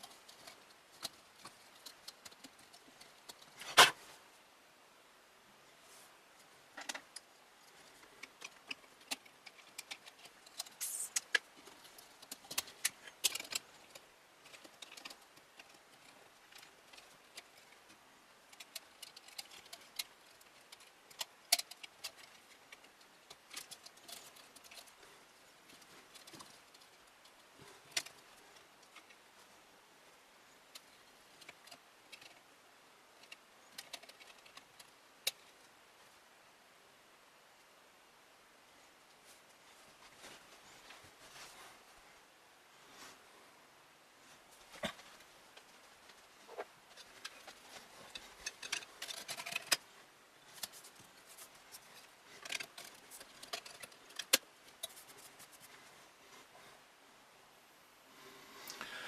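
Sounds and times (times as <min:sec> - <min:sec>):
clicks and rattles of cables: 0:00.0 - 0:04.0, 0:06.8 - 0:29.2, 0:33.2 - 0:35.6, 0:44.7 - 0:55.7.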